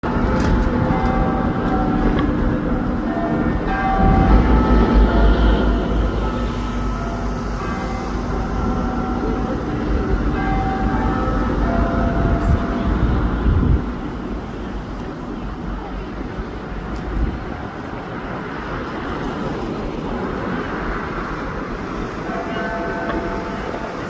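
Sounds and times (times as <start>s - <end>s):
city traffic noise: 0.0s - 24.0s
heavy low rumble: 0.1s - 18.7s
bell ringing: 3.7s - 12.9s.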